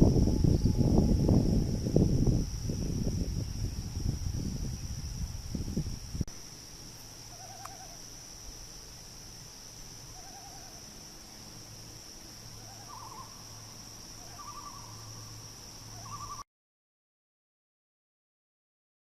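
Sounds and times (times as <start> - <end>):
distant loon calling: 7.3 - 8.0, 10.1 - 10.8, 12.6 - 13.4, 14.2 - 15.1, 15.9 - 16.4.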